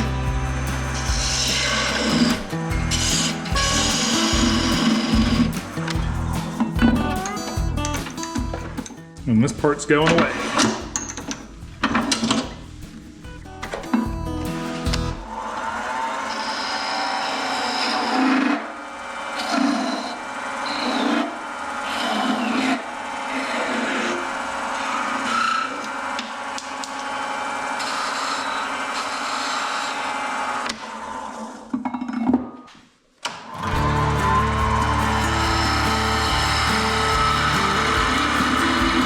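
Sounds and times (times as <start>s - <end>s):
lathe tool scraping wood: 0.0s - 5.8s, 33.6s - 39.0s.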